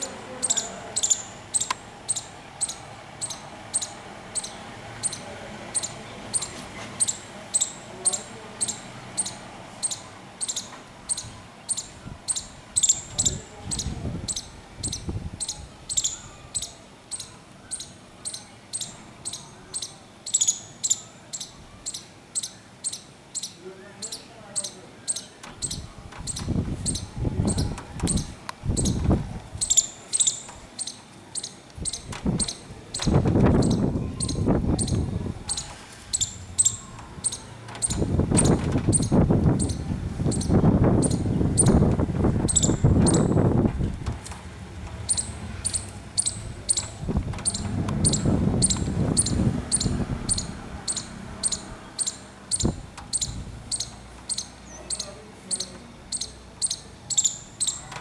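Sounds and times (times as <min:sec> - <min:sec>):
squirrel clicking alarm call: 0:00.0 - 0:58.0
low rumbling noise: 0:25.5 - 0:29.8, 0:31.7 - 0:54.9.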